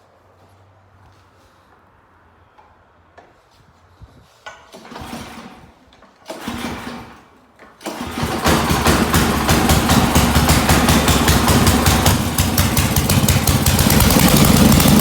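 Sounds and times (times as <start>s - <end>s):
engine cranking and starting: 4.5s - 15.0s
engine running steadily: 7.9s - 15.0s.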